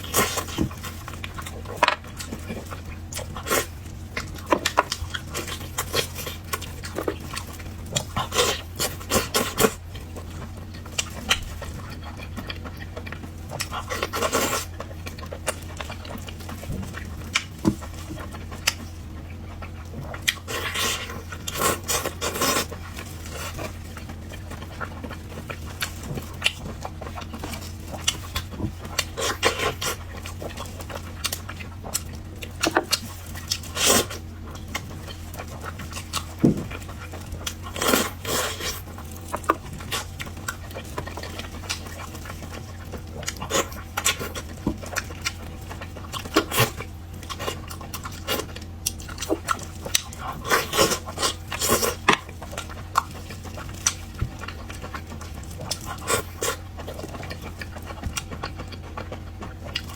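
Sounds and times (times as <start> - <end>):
low steady hum: 0.0 - 59.9
wet chewing and smacking: 0.0 - 59.9.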